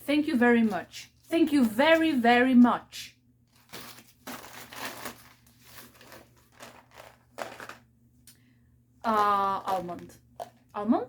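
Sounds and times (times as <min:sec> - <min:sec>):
plastic wrappers crinkling: 0:00.3 - 0:02.2, 0:03.4 - 0:07.9.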